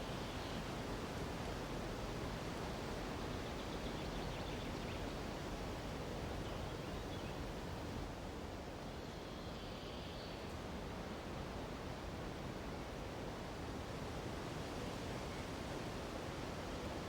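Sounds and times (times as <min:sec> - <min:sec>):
wind through treetops: 0:00.0 - 0:17.0.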